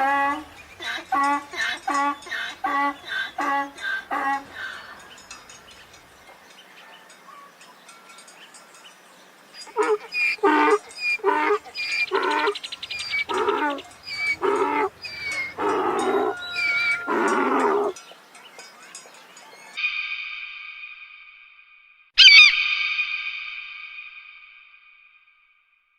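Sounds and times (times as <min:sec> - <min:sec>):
animal calling: 0:00.0 - 0:06.0, 0:09.6 - 0:19.8, 0:22.2 - 0:22.8.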